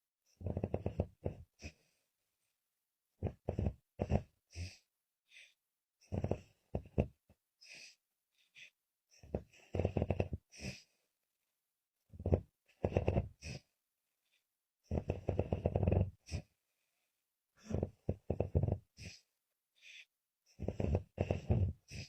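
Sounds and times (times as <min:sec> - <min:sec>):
woman snoring: 0:09.2 - 0:10.9, 0:14.9 - 0:16.5, 0:17.6 - 0:19.2, 0:20.5 - 0:22.0.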